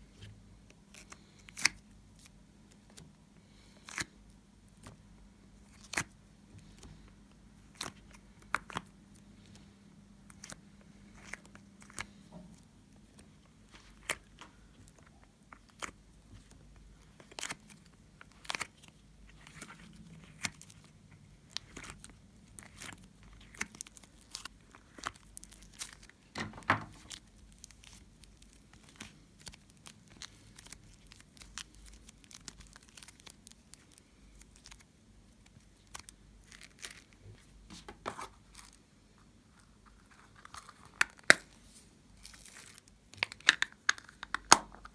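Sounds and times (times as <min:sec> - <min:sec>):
slime crackling and crunching: 0:13.1 - 0:26.3, 0:26.9 - 0:37.2, 0:42.2 - 0:44.8.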